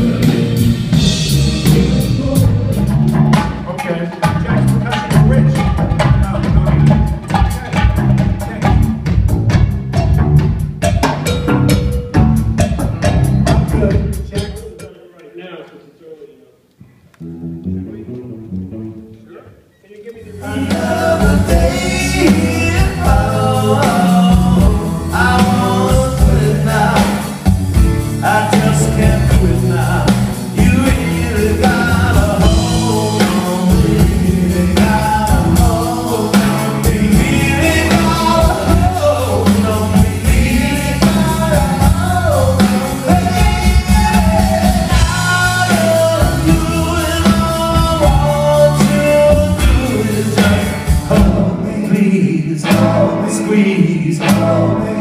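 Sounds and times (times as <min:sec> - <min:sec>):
people singing: 0:00.0 - 0:07.5, 0:20.3 - 0:55.0
band playing with heavy bass: 0:00.0 - 0:15.0, 0:17.2 - 0:55.0.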